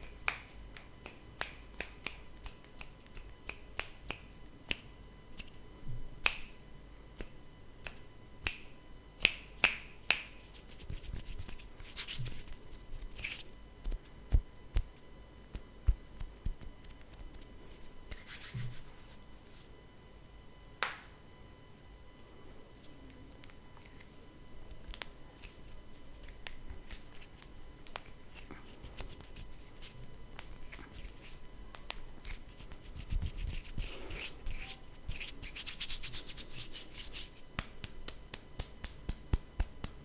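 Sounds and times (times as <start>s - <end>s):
finger snaps and clicks: 0.0s - 5.6s, 6.2s - 6.6s, 7.2s - 11.9s, 13.2s - 14.9s, 15.5s - 17.5s, 18.1s - 18.4s, 20.8s - 21.1s, 24.8s - 25.6s, 26.2s - 29.5s, 30.3s - 40.0s.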